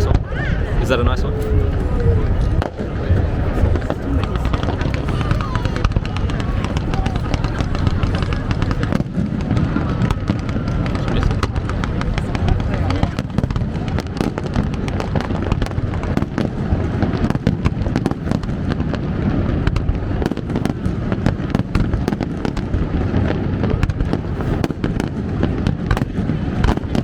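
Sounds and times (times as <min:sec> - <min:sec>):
low rumble of bursts: 0:00.0 - 0:16.0
fireworks cracks and bangs: 0:00.0 - 0:27.0.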